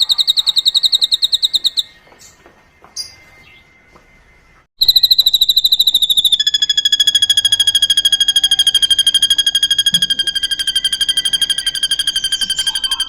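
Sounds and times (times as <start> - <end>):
bird singing fast trill: 0.0 - 2.4, 4.8 - 13.0.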